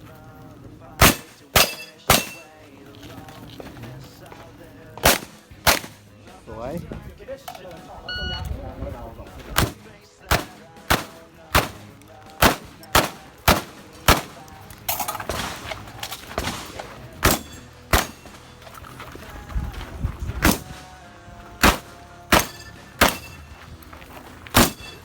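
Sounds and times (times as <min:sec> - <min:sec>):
shotgun shots: 0:01.0 - 0:02.7, 0:05.0 - 0:06.2, 0:09.6 - 0:18.6, 0:20.4 - 0:21.0, 0:21.6 - 0:23.6, 0:24.5 - 0:25.0.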